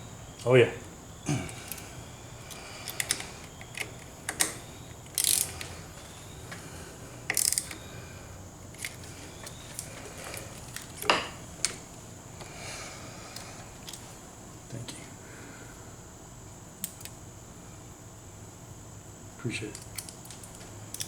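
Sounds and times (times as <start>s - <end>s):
hand tools clicking and clacking: 2.5s - 5.7s, 7.3s - 7.8s.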